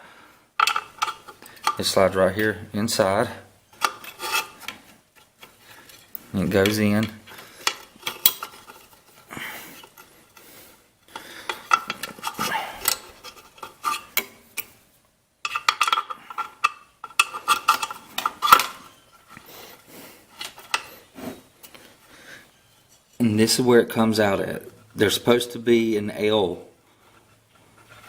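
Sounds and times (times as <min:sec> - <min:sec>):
metal engine parts clinking: 0:00.6 - 0:02.6, 0:03.7 - 0:10.1, 0:11.4 - 0:14.7, 0:15.4 - 0:19.4
metal scraping and rattling: 0:00.6 - 0:14.7, 0:15.4 - 0:21.8.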